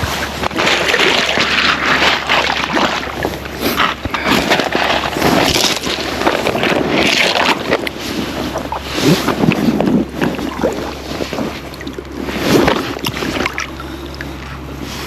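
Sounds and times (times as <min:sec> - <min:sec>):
water sloshing: 0:00.0 - 0:15.0
wind buffeting microphone: 0:03.0 - 0:14.8.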